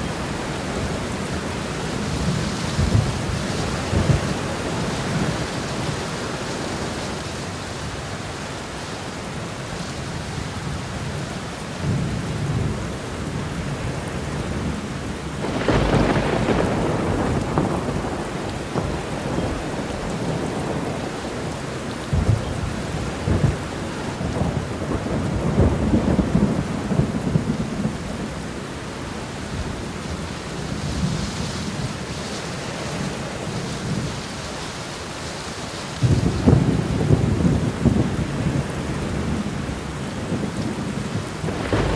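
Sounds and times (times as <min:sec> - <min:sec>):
rolling thunder: 0:00.0 - 0:06.9, 0:11.8 - 0:34.3, 0:36.0 - 0:41.9
steady rain: 0:00.0 - 0:41.9
loud thunderclap: 0:02.0 - 0:06.0, 0:14.5 - 0:28.4, 0:36.0 - 0:41.9.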